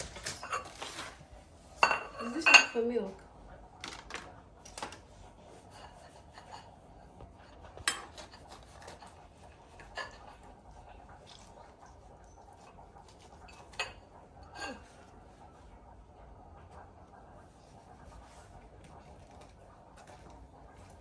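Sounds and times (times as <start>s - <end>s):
utensils clinking against dishes: 0.0s - 1.2s, 1.8s - 3.2s, 7.7s - 10.5s.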